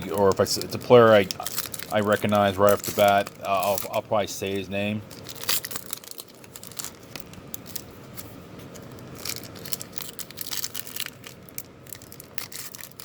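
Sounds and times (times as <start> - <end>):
card pack wrappers crinkling and tearing: 0.0 - 13.0.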